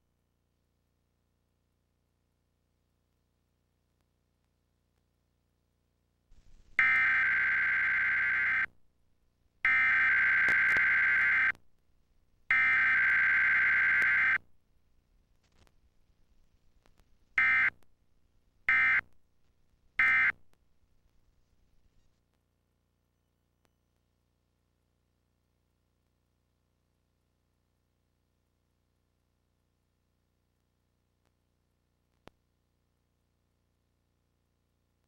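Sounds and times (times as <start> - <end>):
harsh digital data bursts: 6.8 - 8.7, 9.7 - 11.5, 12.5 - 14.4
short data tone bursts: 6.8 - 8.7, 9.7 - 11.5, 12.5 - 14.4.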